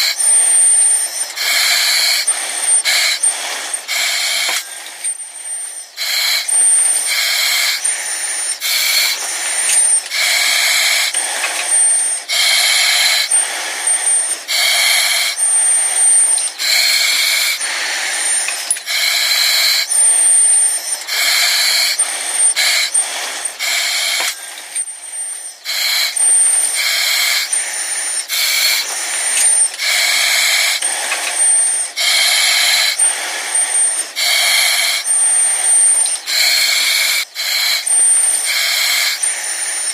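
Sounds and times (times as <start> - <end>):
breathing through oxygen mask: 0.0 - 39.9
high whistle: 23.7 - 39.9.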